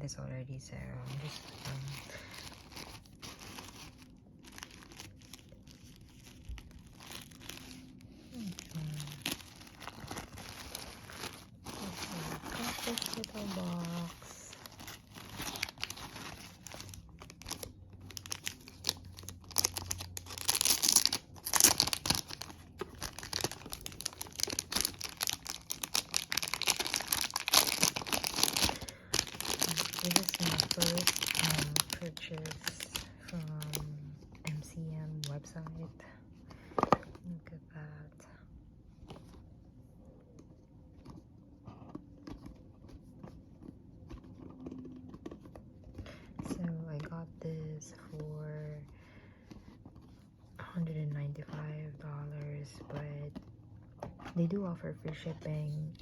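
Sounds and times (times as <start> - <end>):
paper packaging crinkling: 1.0 - 35.3.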